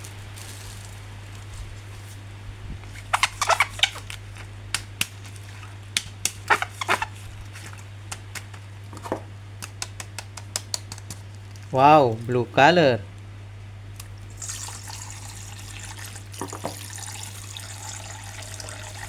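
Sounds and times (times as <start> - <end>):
plastic packaging crinkling: 0.0 - 9.0
steady low hum: 0.0 - 17.9.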